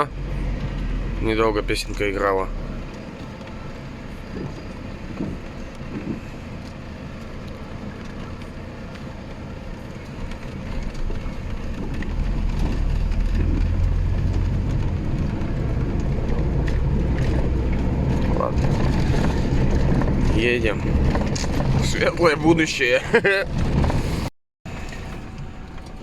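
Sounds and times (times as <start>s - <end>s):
truck engine and road rumble: 0.0s - 26.0s.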